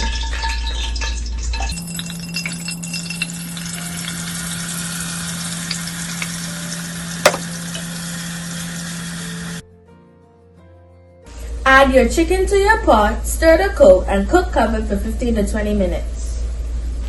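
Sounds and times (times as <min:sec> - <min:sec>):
paste sizzling in hot oil: 0:00.6 - 0:09.6
sharp knock: 0:07.2 - 0:07.5.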